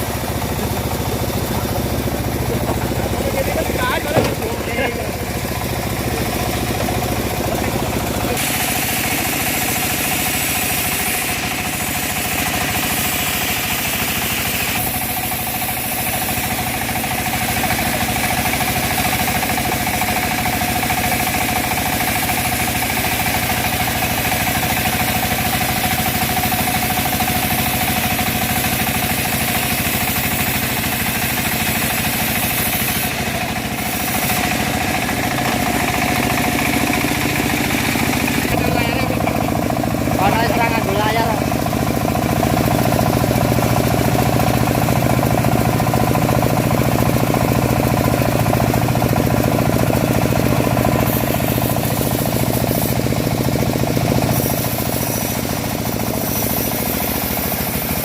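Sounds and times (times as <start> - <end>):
bandsaw mill hum: 0.0 - 58.0
blade hissing in wood: 4.1 - 40.2, 47.9 - 58.0.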